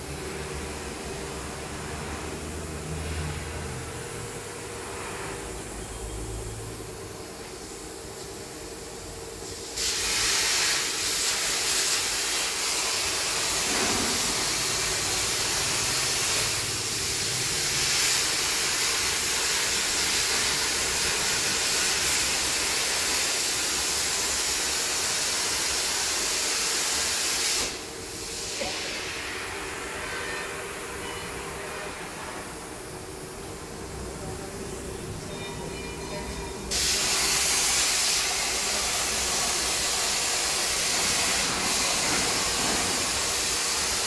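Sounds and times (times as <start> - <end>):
plasma cutting torch hissing: 6.8 - 33.4, 36.7 - 44.0.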